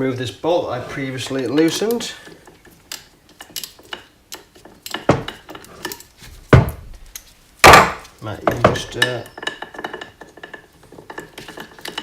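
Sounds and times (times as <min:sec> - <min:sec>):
metal tools clinking and knocking: 0:08.2 - 0:12.0.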